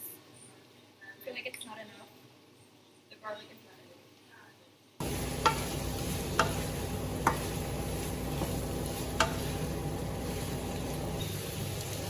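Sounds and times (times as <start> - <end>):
meat sizzling in a pan: 5.0 - 12.0
utensil knocking against pan: 5.3 - 7.6, 8.3 - 9.8.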